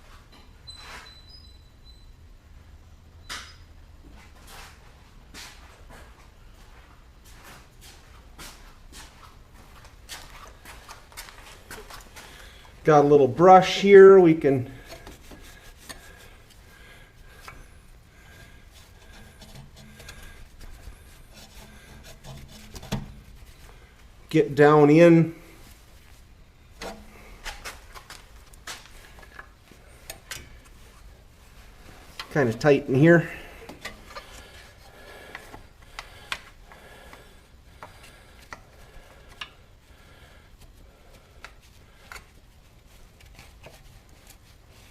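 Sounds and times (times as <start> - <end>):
brush scraping engine parts: 13.6 - 16.6, 18.4 - 23.7, 26.8 - 35.7.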